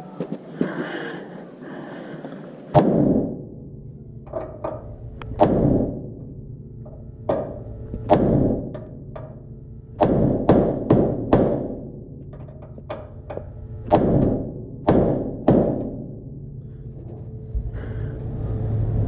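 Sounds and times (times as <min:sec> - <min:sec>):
hammer striking steel punch: 0:07.3 - 0:09.4, 0:10.0 - 0:16.2.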